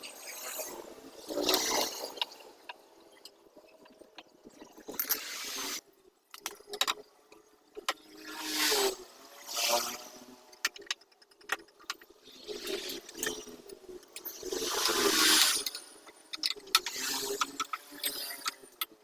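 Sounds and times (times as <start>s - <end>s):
clicks and rattles: 15.0s - 19.0s.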